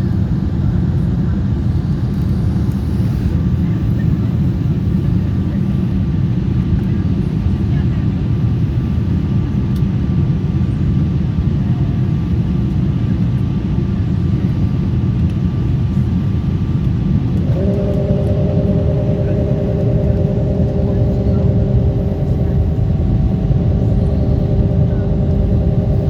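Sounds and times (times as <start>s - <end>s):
airliner cabin rumble: 17.1s - 26.0s
multi-tone hum: 17.2s - 26.0s.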